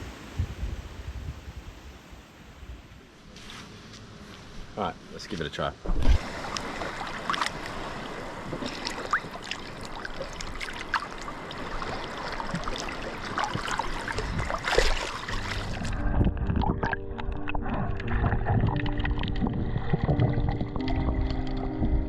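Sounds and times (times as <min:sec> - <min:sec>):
water sloshing and splashing: 0:05.4 - 0:22.0.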